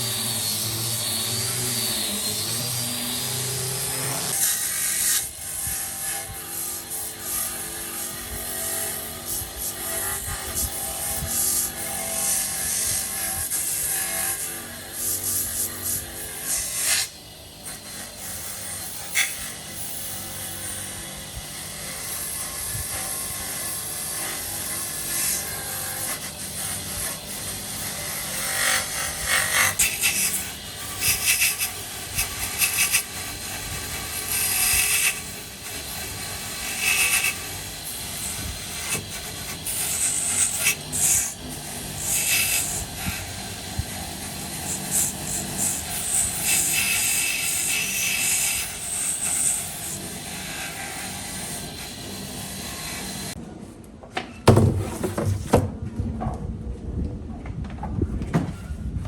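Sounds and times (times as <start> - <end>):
scraping and rubbing on wood: 54.1 - 56.0.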